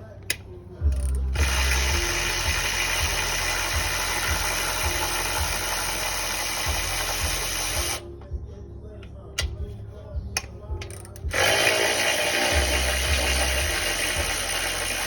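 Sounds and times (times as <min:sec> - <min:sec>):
power tool running: 0:00.9 - 0:08.0, 0:11.2 - 0:15.0.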